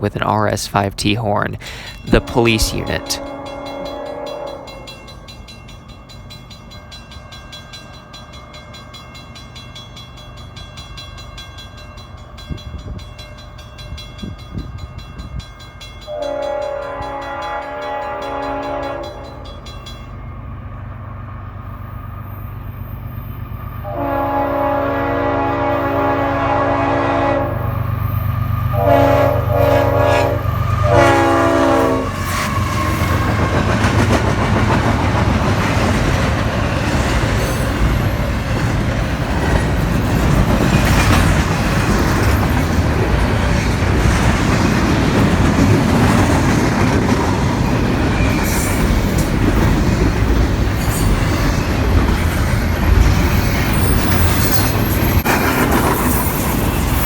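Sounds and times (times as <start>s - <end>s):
freight train rumble: 0.0s - 57.0s
train horn blasts: 2.1s - 5.1s, 16.1s - 19.5s, 23.8s - 27.8s, 28.7s - 33.4s
wheels clacking over rail joints: 32.3s - 57.0s.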